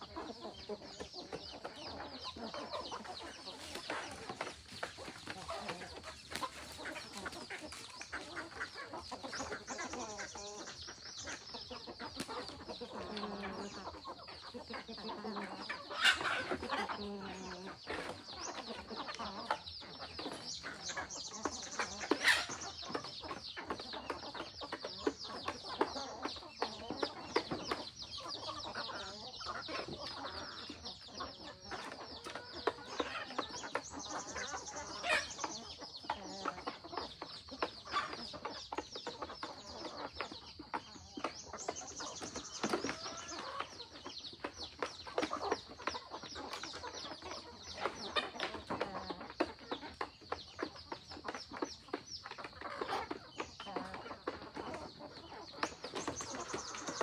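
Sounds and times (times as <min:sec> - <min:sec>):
chickens clucking: 0:00.0 - 0:57.0.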